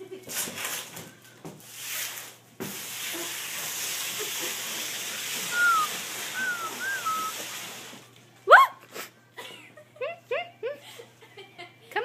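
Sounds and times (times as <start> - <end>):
short whistled notes: 5.5 - 7.4.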